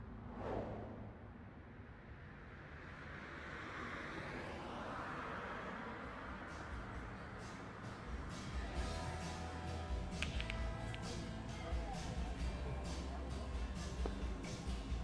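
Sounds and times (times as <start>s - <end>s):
whoosh riser effect: 0.0s - 1.8s.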